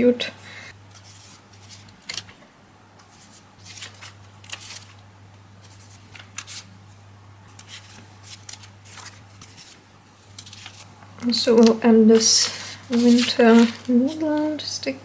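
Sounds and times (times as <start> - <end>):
paper rustling and crackling: 0.9 - 2.4, 3.0 - 5.0, 5.6 - 6.7, 7.6 - 14.9.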